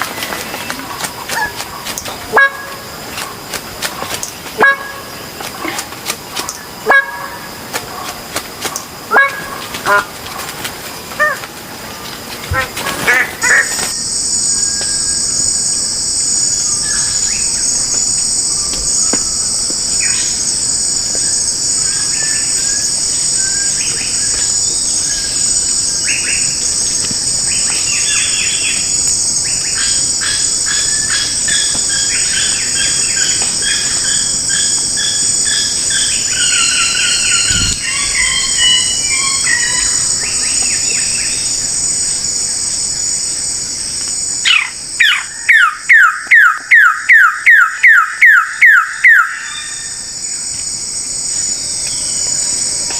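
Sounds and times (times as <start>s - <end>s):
birds calling: 0.0s - 14.0s, 16.3s - 41.7s, 44.4s - 50.0s
high-pitched insect drone: 11.2s - 52.9s.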